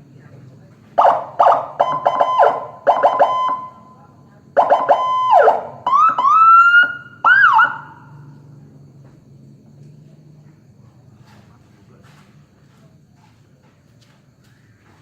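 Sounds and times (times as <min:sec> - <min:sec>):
electronic police siren: 0:01.0 - 0:04.0, 0:04.6 - 0:08.2.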